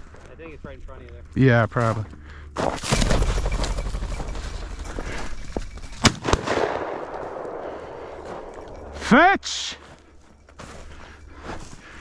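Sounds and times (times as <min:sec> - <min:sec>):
shotgun shot: 0:06.0 - 0:08.0.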